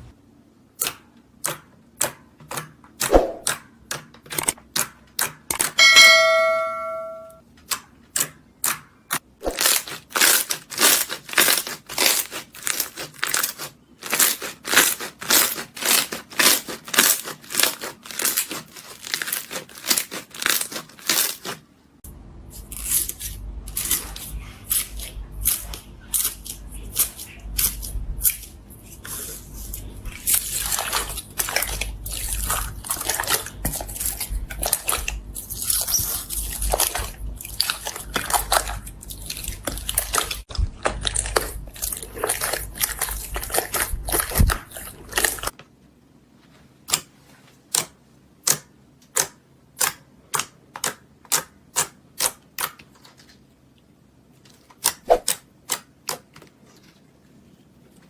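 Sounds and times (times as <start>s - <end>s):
slime crackling and squishing: 9.4s - 21.6s, 22.6s - 45.6s.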